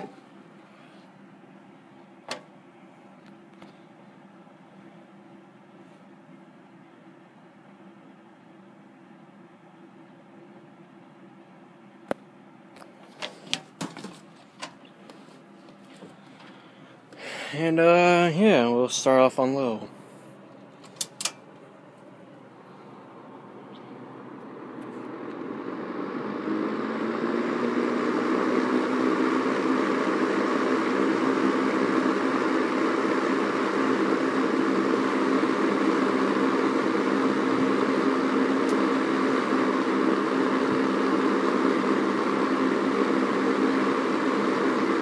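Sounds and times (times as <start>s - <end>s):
box fan running: 0.0s - 45.0s
fan switch click: 20.8s - 21.4s.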